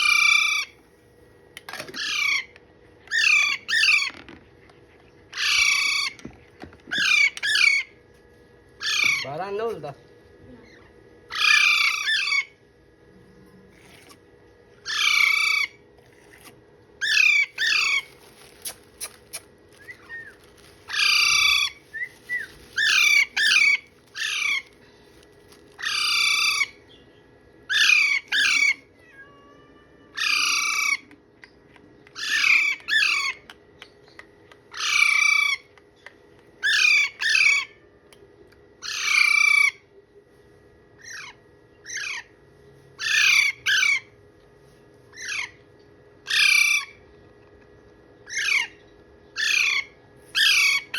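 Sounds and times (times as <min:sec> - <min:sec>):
parrot squawking: 0:00.0 - 0:00.8, 0:01.9 - 0:02.5, 0:03.1 - 0:04.2, 0:05.3 - 0:06.2, 0:06.9 - 0:07.9, 0:08.8 - 0:09.5, 0:10.6 - 0:12.6, 0:14.8 - 0:15.8, 0:17.0 - 0:24.8, 0:25.8 - 0:26.8, 0:27.7 - 0:29.4, 0:30.1 - 0:31.1, 0:32.2 - 0:33.4, 0:34.7 - 0:35.7, 0:36.6 - 0:37.8, 0:38.8 - 0:39.8, 0:41.0 - 0:42.3, 0:43.0 - 0:44.1, 0:45.1 - 0:45.6, 0:46.2 - 0:47.0, 0:48.3 - 0:48.8, 0:49.4 - 0:50.9.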